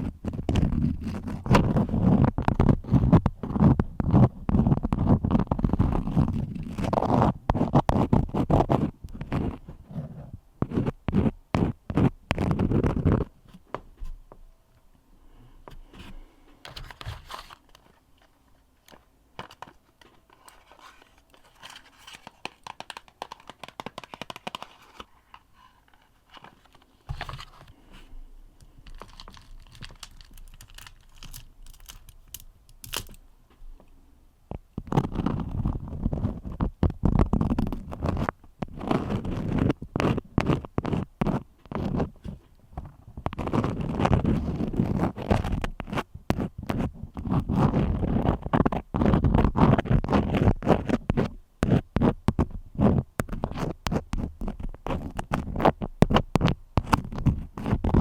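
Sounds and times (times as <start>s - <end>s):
crayon scratching on paper: 7.5s - 13.3s.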